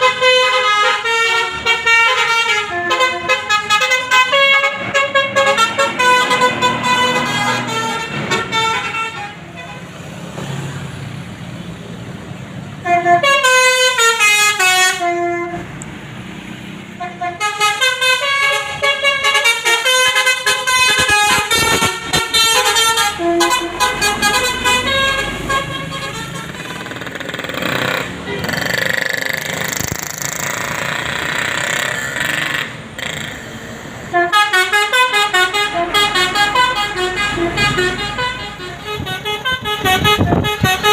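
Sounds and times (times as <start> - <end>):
musical bus horn tune: 0.0 - 10.0, 12.8 - 15.8, 17.0 - 27.0, 34.1 - 40.9.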